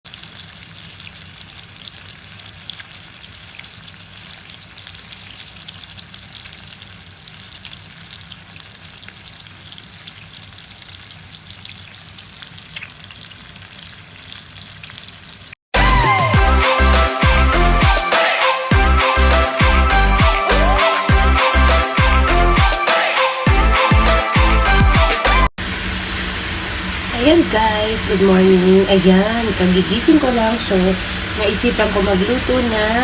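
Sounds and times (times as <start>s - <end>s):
sausage sizzling in oil: 0.1s - 15.6s, 25.6s - 33.0s
music: 15.8s - 25.5s
oil popping: 25.6s - 33.0s.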